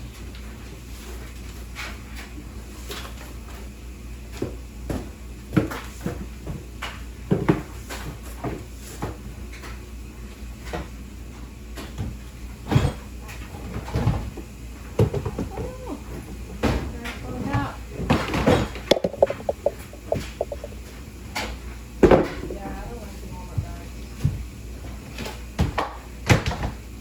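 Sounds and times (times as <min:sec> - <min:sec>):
household objects knocking: 0:18.9 - 0:20.7.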